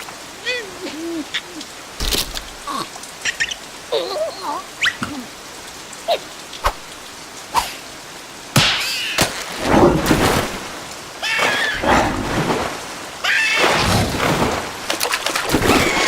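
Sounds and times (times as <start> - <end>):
rushing splashing sound effects: 8.5 - 16.0.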